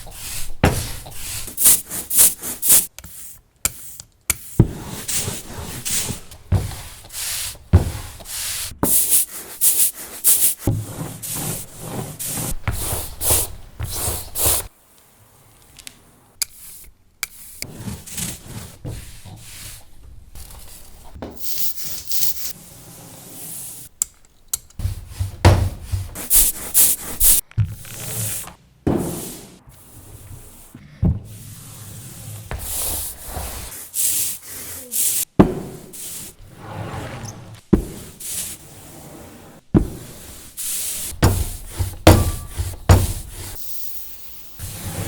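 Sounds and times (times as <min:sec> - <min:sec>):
scraping and rubbing strokes: 0:04.8 - 0:14.7, 0:16.6 - 0:23.9, 0:24.8 - 0:28.5, 0:29.1 - 0:35.3, 0:35.9 - 0:45.0.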